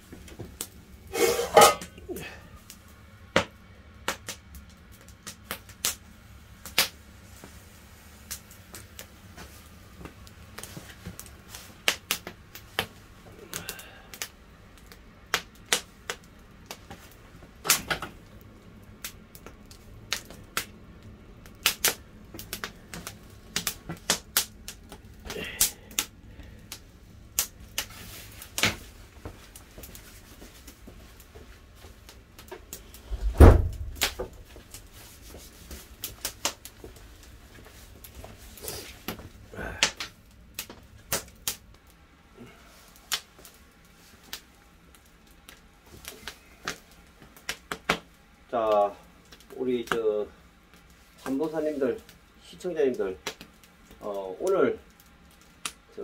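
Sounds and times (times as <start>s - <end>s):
wood fire crackling and popping: 0.0s - 56.0s
heavy thump: 33.1s - 34.4s.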